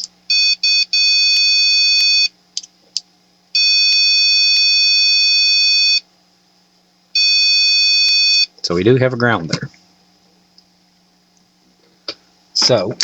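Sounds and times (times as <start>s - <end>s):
multimeter continuity beep: 7.2s - 8.5s.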